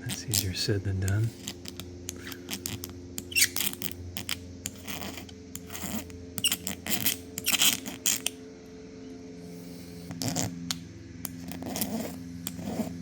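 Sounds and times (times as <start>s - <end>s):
razor blade scraping glass: 1.1s - 8.4s, 10.1s - 10.6s, 11.2s - 13.0s.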